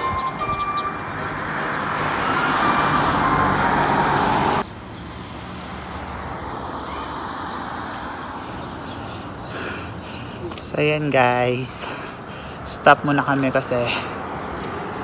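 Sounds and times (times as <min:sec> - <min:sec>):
background music: 0:00.0 - 0:04.6
road traffic noise: 0:00.0 - 0:15.0.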